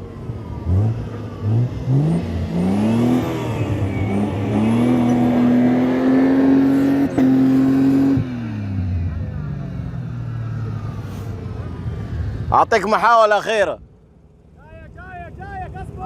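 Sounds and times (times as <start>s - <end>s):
off-road vehicle engine revving: 0.0s - 13.0s.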